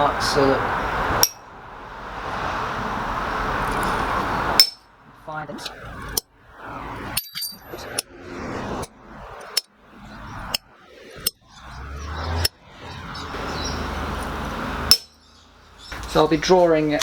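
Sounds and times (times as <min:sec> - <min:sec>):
rushing noise: 0:00.0 - 0:15.2
hammer striking steel: 0:01.2 - 0:01.4, 0:04.6 - 0:04.9, 0:14.9 - 0:15.2.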